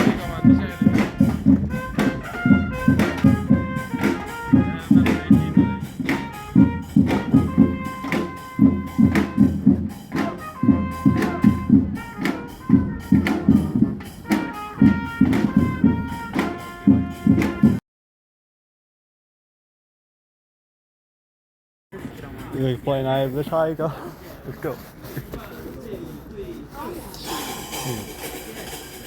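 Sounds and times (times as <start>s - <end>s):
brass band melody: 0.0s - 17.8s
steady drumbeat: 0.0s - 17.8s, 26.6s - 29.0s.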